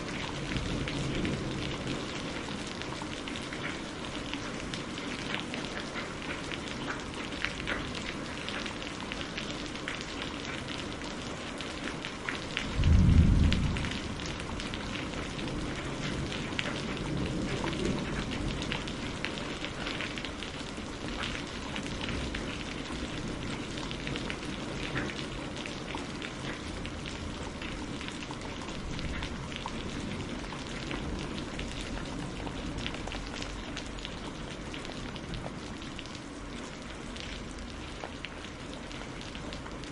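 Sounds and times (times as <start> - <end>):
low thunder rumble: 0.0 - 2.5, 12.6 - 19.2
heavy rain: 0.0 - 39.9
deep thunderclap: 12.7 - 18.8.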